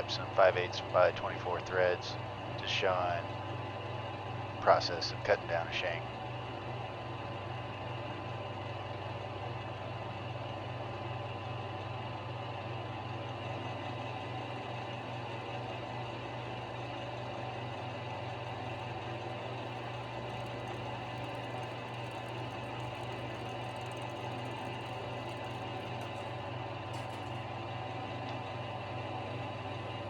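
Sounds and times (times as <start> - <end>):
metal lathe humming: 13.3 - 30.0.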